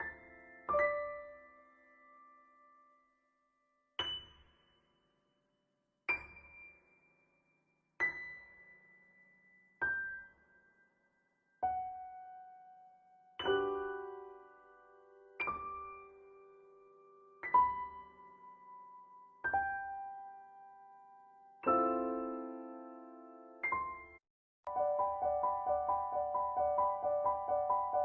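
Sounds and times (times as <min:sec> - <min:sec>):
slow solo piano: 0:00.0 - 0:02.8, 0:11.6 - 0:28.0.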